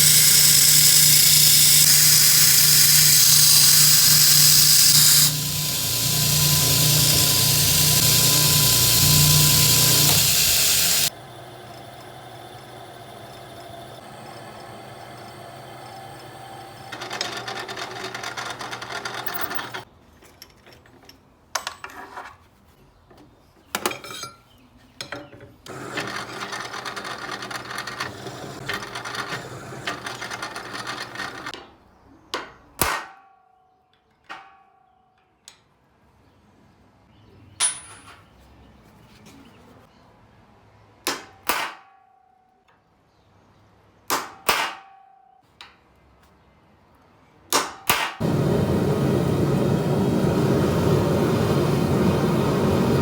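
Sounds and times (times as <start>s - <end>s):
power tool working steel: 0.0s - 17.2s, 48.2s - 53.0s.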